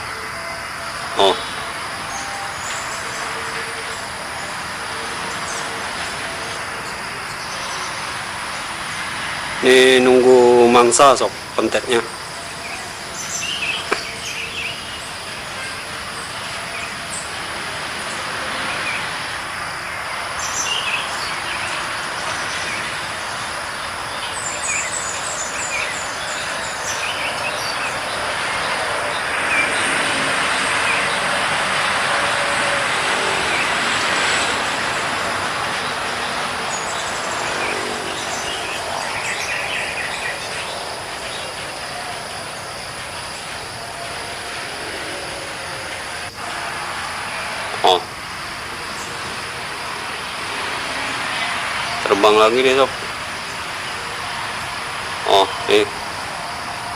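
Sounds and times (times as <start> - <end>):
broad rushing noise: 0.0 - 56.9
steady high whine: 0.0 - 56.9
bird chirps: 0.8 - 8.2, 11.8 - 19.1.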